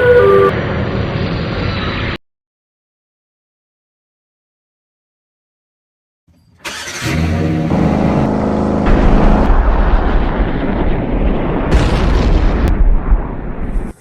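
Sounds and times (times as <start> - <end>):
droning tone: 0.0 - 2.2
heavy rumbling: 8.1 - 14.0
loud blast: 8.8 - 14.0.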